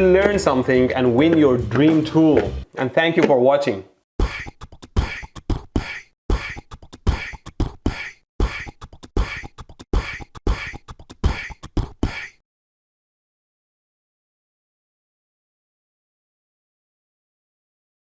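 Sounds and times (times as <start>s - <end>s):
beatbox percussive hits: 4.2s - 12.4s.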